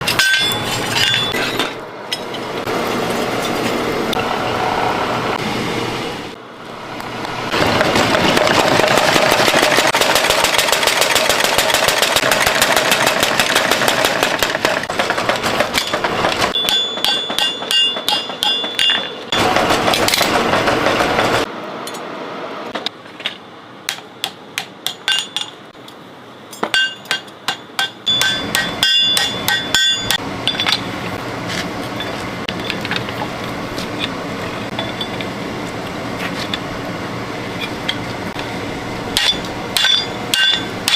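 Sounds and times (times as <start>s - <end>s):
hammer striking steel on anvil: 0.0s - 2.4s, 15.7s - 20.3s, 23.9s - 25.6s, 26.5s - 30.9s, 39.2s - 40.9s.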